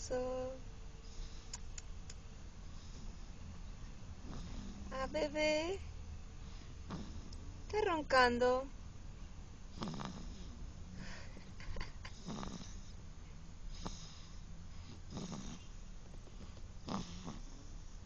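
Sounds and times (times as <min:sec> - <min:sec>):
person snoring: 0:09.8 - 0:10.5, 0:12.1 - 0:12.8, 0:16.8 - 0:17.5.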